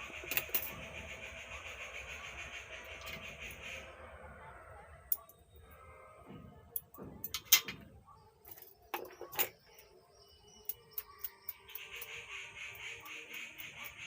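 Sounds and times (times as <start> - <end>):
metal tools clicking and clinking: 0.1 - 0.8, 6.7 - 10.0, 10.6 - 12.1.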